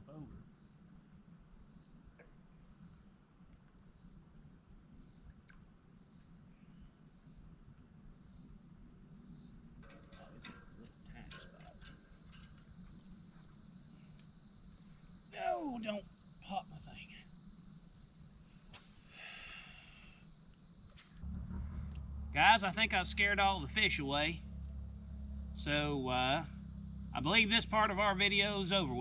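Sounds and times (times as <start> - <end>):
high-pitched insect chorus: 0.0 - 29.0
faint clicks: 5.3 - 5.7, 9.4 - 14.4
soft pulsing call: 21.2 - 29.0.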